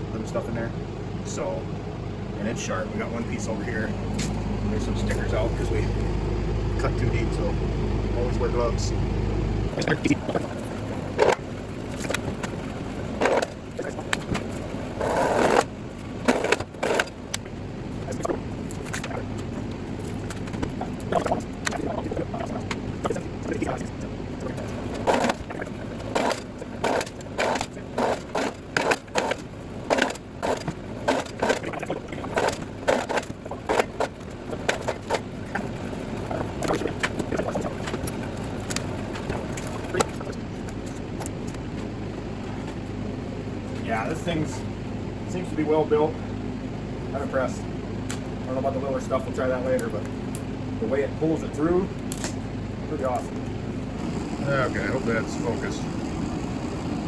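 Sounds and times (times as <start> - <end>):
wire-stripping machine humming: 0.0 - 57.0
gear clacks and knocks: 9.8 - 23.8, 24.4 - 42.8.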